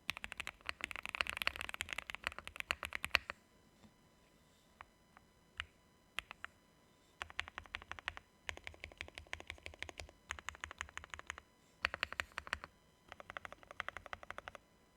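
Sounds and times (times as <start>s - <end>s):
typing on mechanical keyboard: 0.1s - 3.3s, 7.2s - 14.6s.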